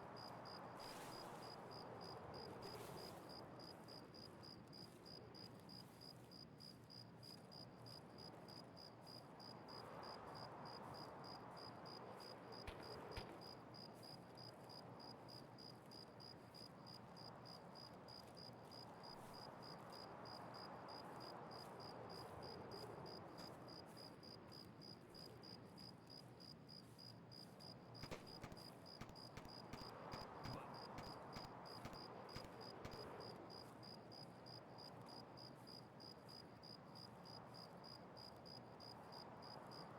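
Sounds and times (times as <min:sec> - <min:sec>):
faint insect chirping: 0:00.2 - 0:39.9
light clicks: 0:12.7 - 0:13.6, 0:28.0 - 0:33.2.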